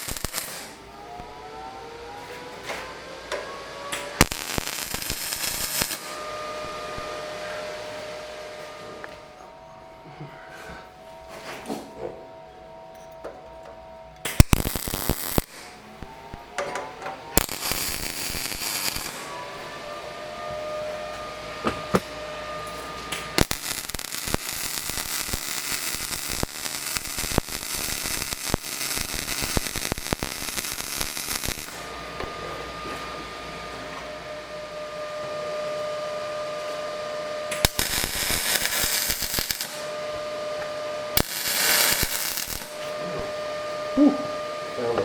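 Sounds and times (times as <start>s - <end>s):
welding arc crackling: 0.0s - 1.4s, 3.3s - 7.1s, 14.2s - 19.7s, 21.7s - 32.0s, 36.7s - 44.0s.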